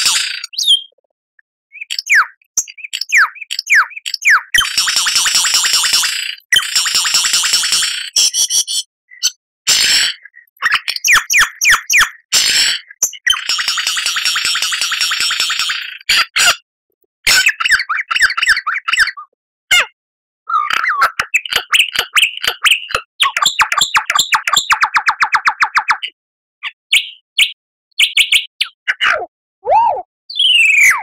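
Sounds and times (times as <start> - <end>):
lyrebird song: 0.0 - 1.0, 1.7 - 16.6, 17.3 - 31.0.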